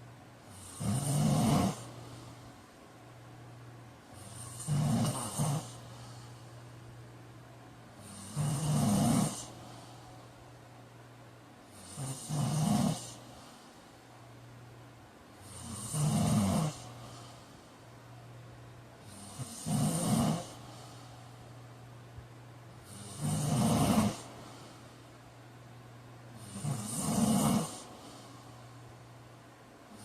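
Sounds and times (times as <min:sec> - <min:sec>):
low steady hum: 0:00.0 - 0:30.0
man snoring: 0:00.4 - 0:02.4, 0:04.1 - 0:06.3, 0:08.0 - 0:09.8, 0:11.7 - 0:13.3, 0:15.4 - 0:17.4, 0:19.0 - 0:21.0, 0:22.8 - 0:24.6, 0:26.4 - 0:28.3.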